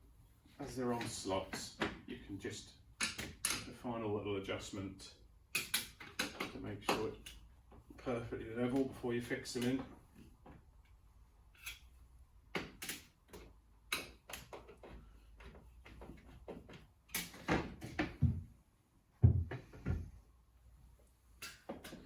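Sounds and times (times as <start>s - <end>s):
tools clicking on metal: 3.0s - 3.8s, 5.5s - 7.5s, 11.6s - 11.9s, 12.6s - 14.8s, 21.4s - 22.0s
heavy thuds: 19.2s - 20.2s.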